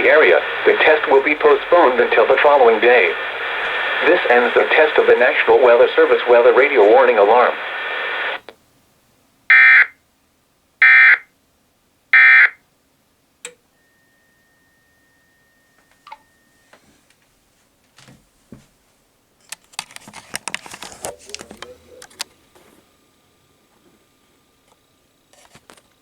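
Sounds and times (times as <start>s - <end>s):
faint steady tone: 0.0s - 8.4s, 13.4s - 17.1s
clicking and rustling handling noise: 19.4s - 22.8s.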